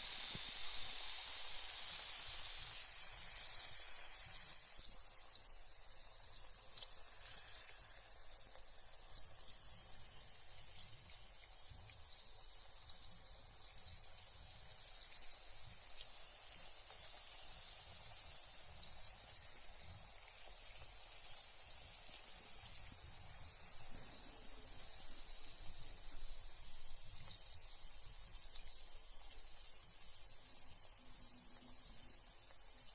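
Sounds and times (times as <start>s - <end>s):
bath bomb fizzing: 0.0s - 32.9s.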